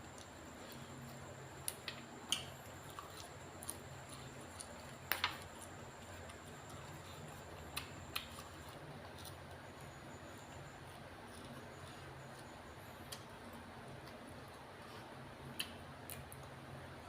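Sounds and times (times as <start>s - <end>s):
faint steady hum: 0.0s - 17.0s
person chewing food: 0.1s - 13.3s.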